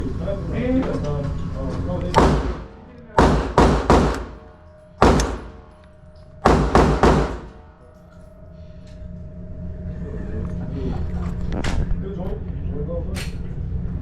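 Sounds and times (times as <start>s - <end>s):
gunshots with echo: 2.2s - 5.7s, 6.4s - 7.6s.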